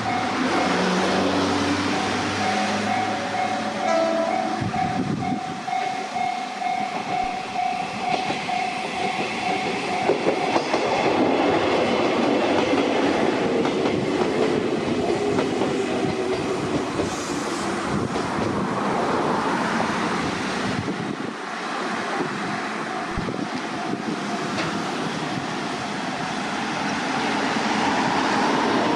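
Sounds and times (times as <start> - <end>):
train wheels clattering over rail joints: 8.0 - 18.6, 24.3 - 25.1.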